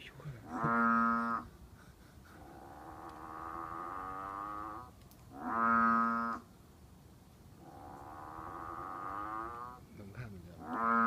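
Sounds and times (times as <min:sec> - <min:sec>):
animal droning call: 0:02.4 - 0:06.4, 0:07.6 - 0:09.8.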